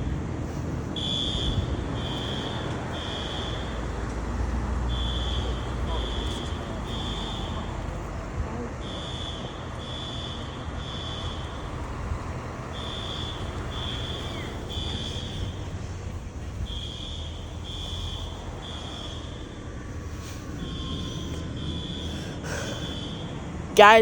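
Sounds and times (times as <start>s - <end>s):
fire alarm high beeps: 1.0s - 3.9s, 4.9s - 7.7s, 8.8s - 11.7s, 12.7s - 15.6s, 16.6s - 19.7s.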